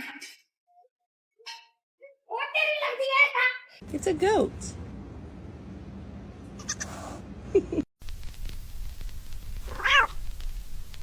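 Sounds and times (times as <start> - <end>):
goat bleating: 6.6 - 7.2.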